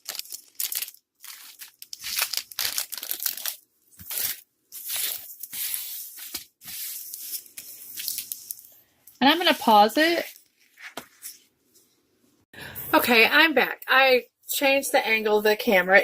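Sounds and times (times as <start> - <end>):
plastic film crinkling and peeling: 0.0 - 8.8.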